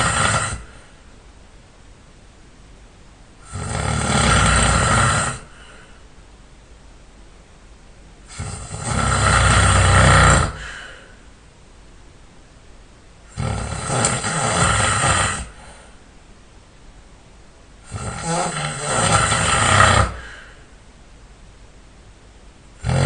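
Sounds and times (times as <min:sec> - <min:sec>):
person snoring loudly: 0:00.0 - 0:00.9, 0:03.4 - 0:05.7, 0:08.2 - 0:11.0, 0:13.3 - 0:15.8, 0:17.8 - 0:20.5, 0:22.8 - 0:23.0
quiet breathing: 0:00.0 - 0:01.2, 0:03.4 - 0:06.3, 0:08.2 - 0:11.5, 0:13.2 - 0:16.2, 0:17.8 - 0:21.0.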